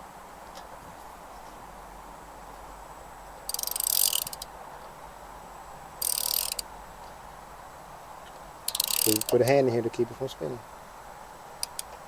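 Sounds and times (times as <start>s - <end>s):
socket ratchet clicking: 3.5s - 4.5s, 6.0s - 6.6s, 8.7s - 9.5s, 11.6s - 11.9s.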